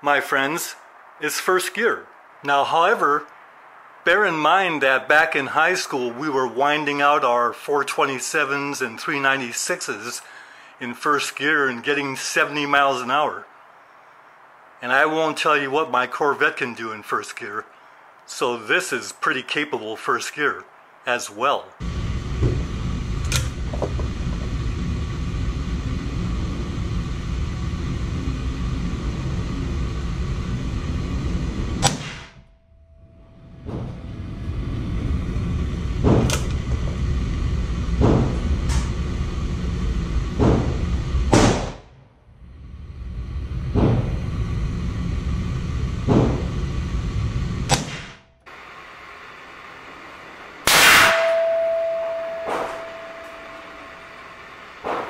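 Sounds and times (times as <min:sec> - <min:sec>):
low rumble: 0:21.8 - 0:48.3
revolver shots: 0:31.8 - 0:32.4, 0:40.4 - 0:41.9, 0:47.7 - 0:48.2
short ringing tone: 0:51.0 - 0:54.8.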